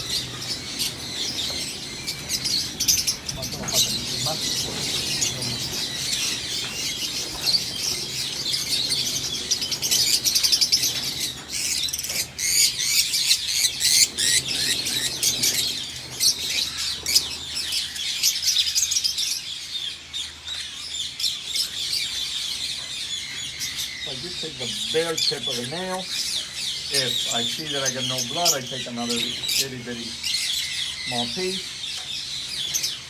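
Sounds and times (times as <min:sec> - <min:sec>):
flock of birds chattering: 0:00.0 - 0:33.0.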